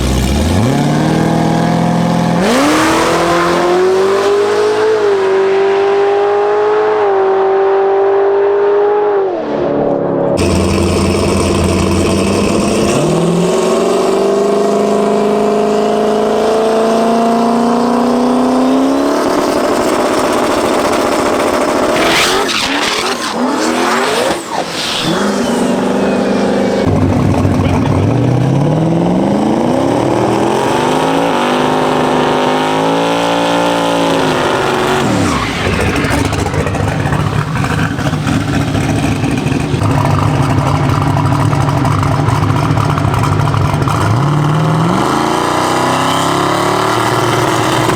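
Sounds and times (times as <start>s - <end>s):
race car engine revving: 0.0s - 47.9s
tyre squeal: 21.9s - 26.9s, 34.4s - 36.6s.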